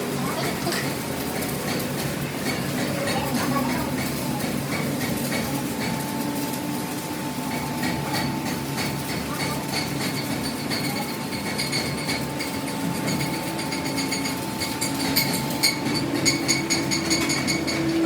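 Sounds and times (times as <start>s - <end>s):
low machinery hum: 0.0s - 18.0s
machinery whine: 10.2s - 18.0s.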